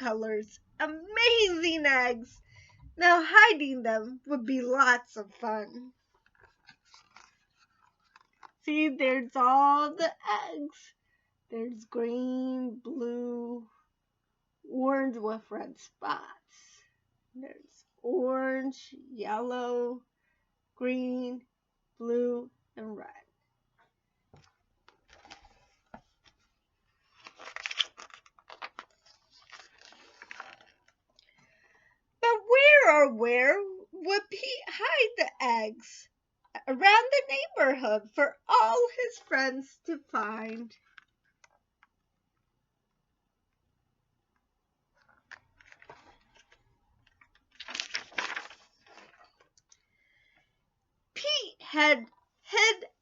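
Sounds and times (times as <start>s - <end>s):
rustling and crinkling handling: 5.2s - 8.7s, 24.3s - 31.3s, 44.9s - 49.8s.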